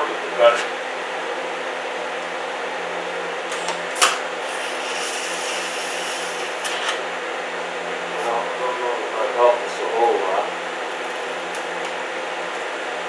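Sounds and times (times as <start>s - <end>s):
welder humming: 0.0s - 8.8s
welding arc crackling hiss: 3.5s - 7.1s.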